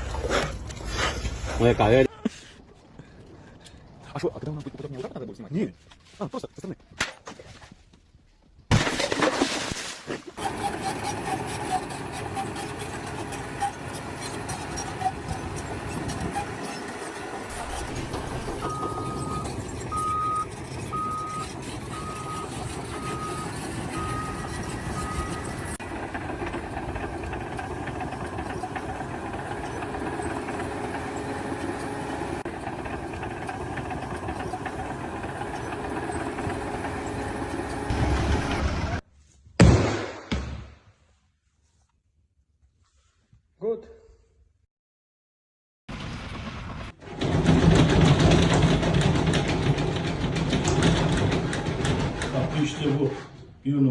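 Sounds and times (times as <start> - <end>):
heavy vehicle engine running: 10.4 - 39.0, 47.1 - 52.9
reversing alarm beeping: 17.5 - 25.8.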